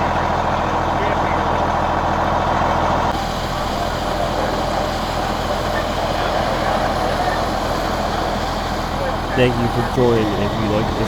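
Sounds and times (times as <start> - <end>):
fire engines running: 0.0 - 11.0
broad haze of noise: 3.1 - 11.0.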